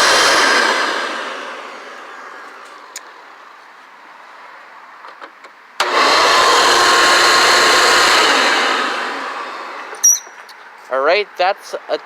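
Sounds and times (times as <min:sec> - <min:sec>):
vacuum cleaner running with whine: 0:00.0 - 0:02.9, 0:05.8 - 0:09.9.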